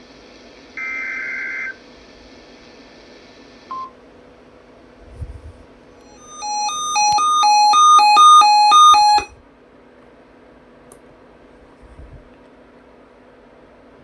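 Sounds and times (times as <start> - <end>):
two-pitch alarm beep: 6.1 - 9.3.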